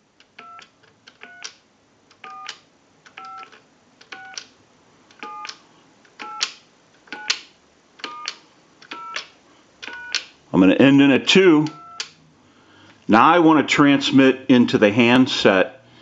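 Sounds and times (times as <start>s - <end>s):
two-tone keypad beep: 11.7s - 12.1s.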